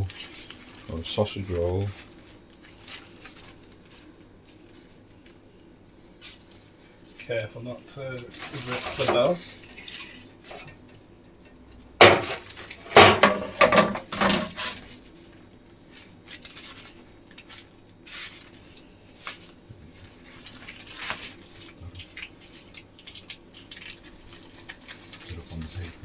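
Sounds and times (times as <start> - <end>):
knocks and clatter on worktop: 12.0 - 14.8.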